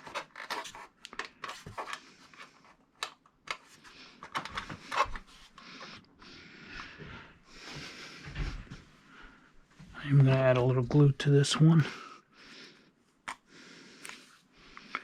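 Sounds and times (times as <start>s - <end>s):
plastic parts clicking: 0.0s - 2.0s.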